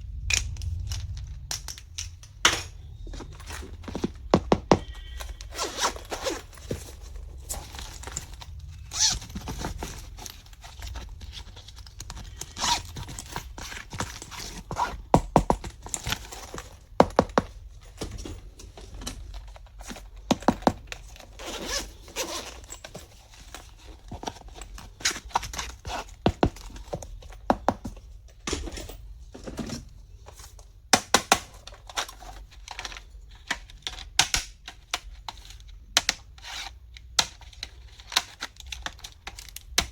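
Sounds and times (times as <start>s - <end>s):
packaging rustling and crinkling: 2.8s - 28.5s.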